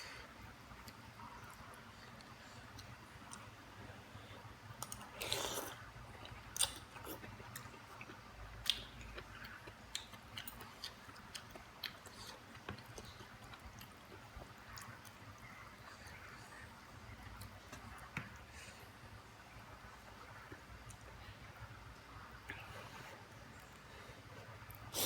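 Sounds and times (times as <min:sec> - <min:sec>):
close chewing and eating: 0:00.1 - 0:19.2.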